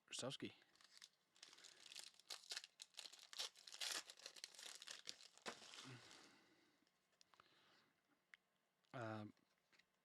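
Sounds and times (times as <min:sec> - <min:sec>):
foil wrapper crinkling and tearing: 0:00.7 - 0:06.3.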